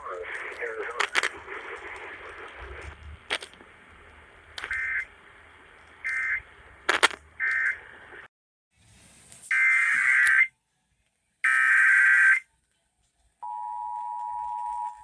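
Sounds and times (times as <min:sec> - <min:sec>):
radio hiss with crackling clicks: 0:00.0 - 0:08.3, 0:09.0 - 0:13.4
squawking data bursts: 0:00.0 - 0:08.3, 0:09.5 - 0:10.5.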